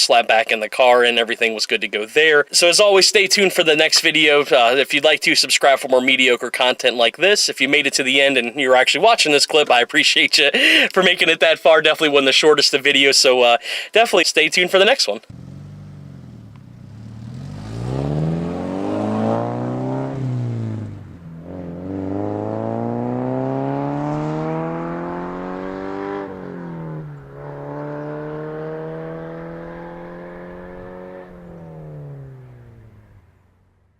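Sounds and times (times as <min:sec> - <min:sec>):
car engine accelerating hard: 0:15.3 - 0:33.6.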